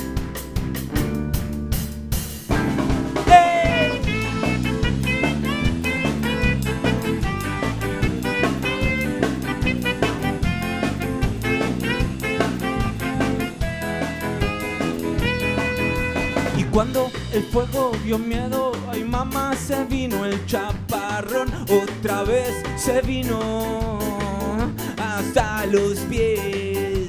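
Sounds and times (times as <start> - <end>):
band playing instrumental: 0.0 - 27.0
drum kit beat: 0.0 - 27.0.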